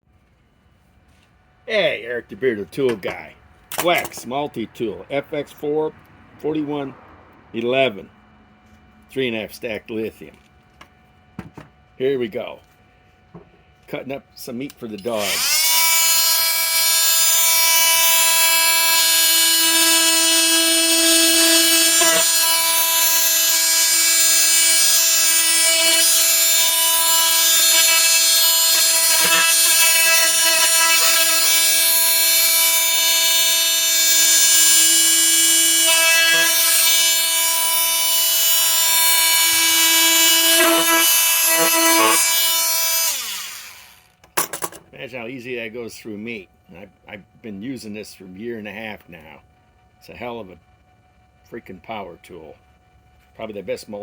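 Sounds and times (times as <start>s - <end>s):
oscillating multi-tool whine: 12.0s - 54.0s.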